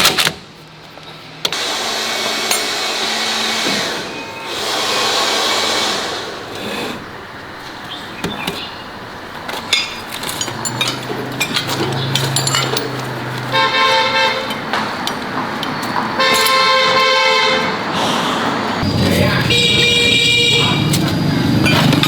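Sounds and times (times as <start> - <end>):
vehicle horn honking: 13.4 - 14.7, 16.2 - 17.9, 18.8 - 21.3.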